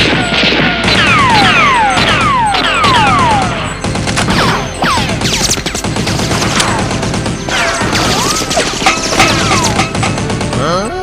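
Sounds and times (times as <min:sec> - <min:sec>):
blaster shots with whistling zap: 0:00.0 - 0:09.9
background music: 0:00.7 - 0:11.0.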